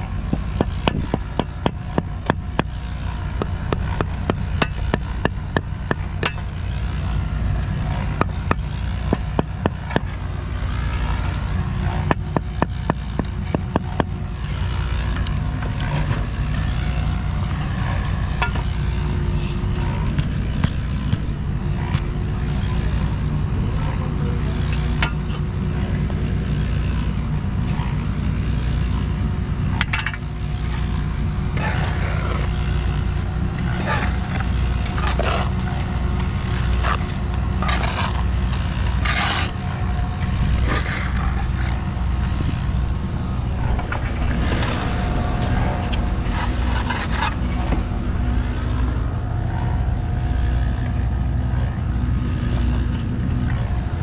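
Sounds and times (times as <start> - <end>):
engine droning: 0.0 - 54.0
scraping: 33.6 - 42.7, 43.6 - 47.9.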